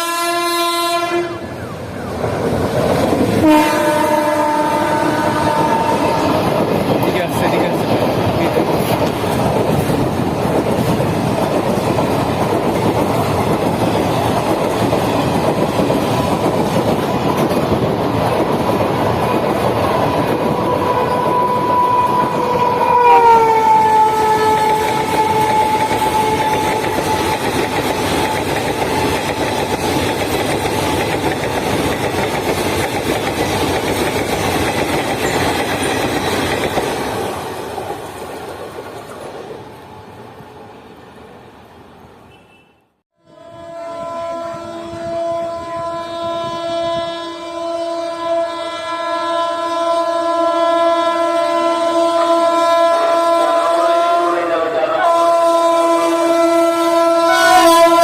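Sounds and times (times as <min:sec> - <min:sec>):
train horn: 0:00.0 - 0:01.9, 0:03.4 - 0:06.7, 0:20.4 - 0:29.2, 0:42.3 - 0:58.0
train wheels clattering on rails: 0:05.2 - 0:22.8, 0:24.4 - 0:39.8.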